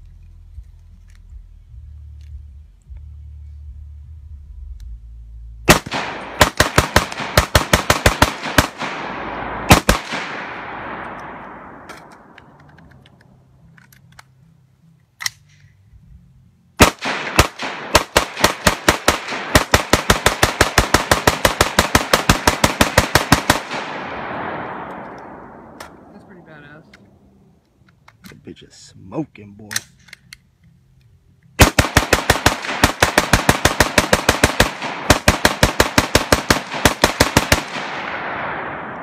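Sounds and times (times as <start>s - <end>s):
rifle shots with rolling echo: 5.6s - 12.8s, 16.8s - 27.2s, 31.6s - 39.0s.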